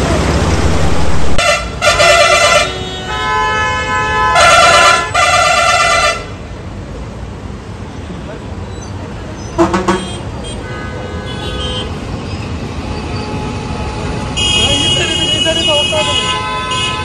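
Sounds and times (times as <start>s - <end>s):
low engine rumble: 0.0s - 1.9s
vehicle horn honking: 1.0s - 6.3s, 9.6s - 12.0s, 12.9s - 17.0s.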